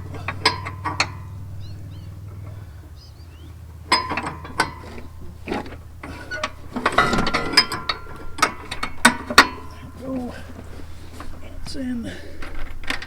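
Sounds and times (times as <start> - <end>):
metal parts rattling: 0.0 - 1.6, 2.3 - 11.7
steady low hum: 0.0 - 13.0
metal parts clinking and knocking: 3.9 - 11.4.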